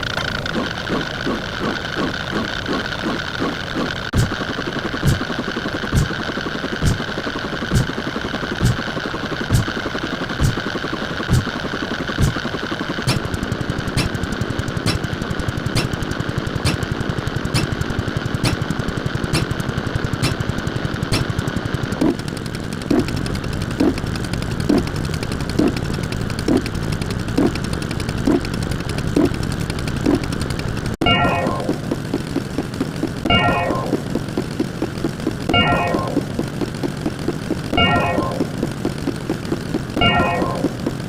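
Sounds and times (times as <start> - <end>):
fast mechanical rattle: 0.0 - 41.0
sharp ticks: 0.0 - 41.0
low blips: 26.5 - 41.0
electronic tone pattern: 31.0 - 32.4, 33.0 - 34.5, 35.4 - 37.0, 37.6 - 39.3, 39.9 - 40.9.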